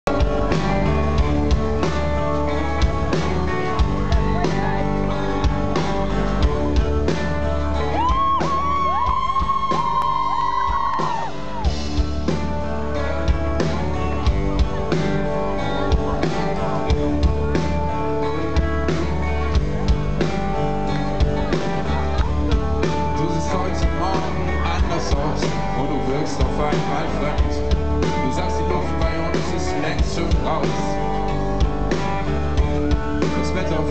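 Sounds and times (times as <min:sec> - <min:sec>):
guitars: 0:00.0 - 0:33.9
rock band playing live: 0:00.0 - 0:33.9
steady drum beat: 0:00.1 - 0:33.9.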